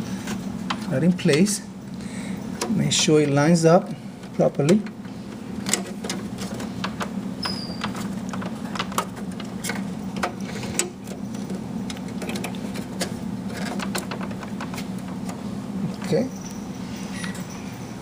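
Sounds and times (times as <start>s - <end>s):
connector clicks and scrapes: 7.8s - 15.4s.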